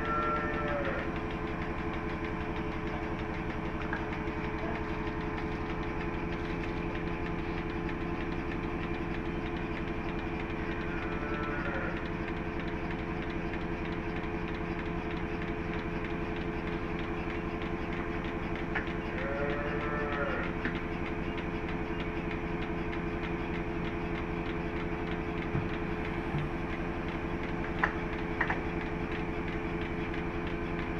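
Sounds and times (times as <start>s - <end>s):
motor-driven machine pulsing: 0.0s - 30.9s.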